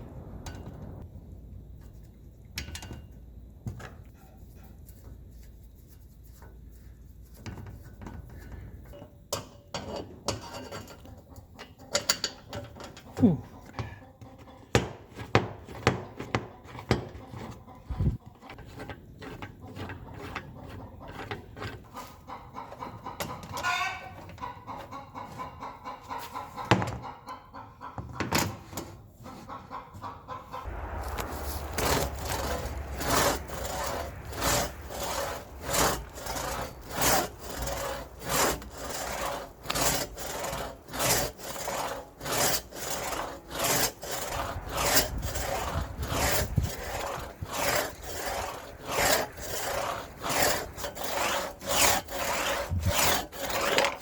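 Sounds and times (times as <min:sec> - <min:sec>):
hand tool rasping on saw blade: 0:14.8 - 0:25.4, 0:30.8 - 0:54.0.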